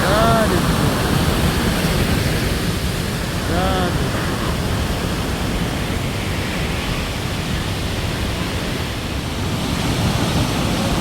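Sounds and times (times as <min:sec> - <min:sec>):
waterfall roaring: 0:00.0 - 0:11.0.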